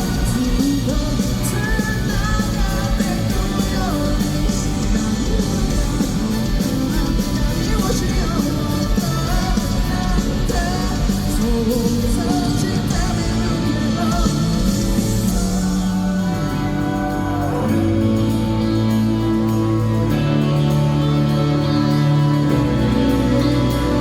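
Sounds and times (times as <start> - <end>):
live rock band playing: 0.0 - 24.0
person singing: 0.0 - 24.0.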